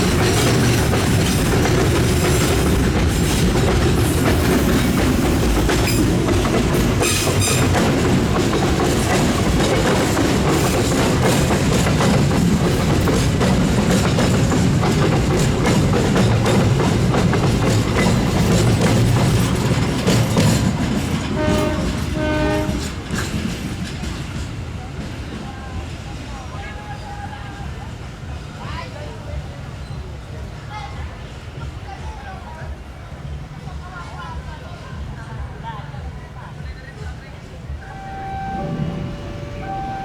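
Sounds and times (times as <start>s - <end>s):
train rumbling past: 0.0s - 31.4s, 37.6s - 40.0s
locomotive horn blasts: 21.4s - 23.0s, 37.8s - 40.0s.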